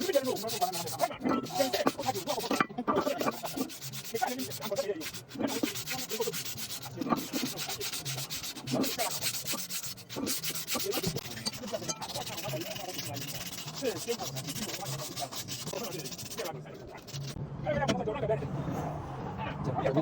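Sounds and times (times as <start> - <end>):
abrasive scraping on metal: 0.0 - 17.4.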